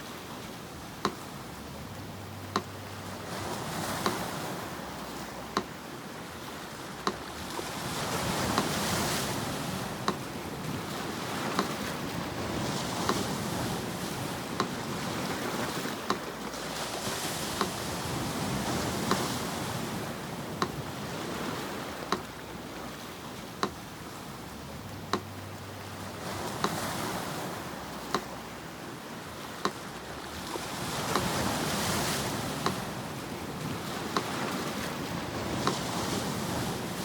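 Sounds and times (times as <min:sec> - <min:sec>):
sea surf washing in: 0:00.0 - 0:37.0
metronome ticking: 0:00.8 - 0:05.9, 0:06.9 - 0:10.5, 0:11.4 - 0:16.5, 0:17.5 - 0:20.9, 0:22.0 - 0:28.7.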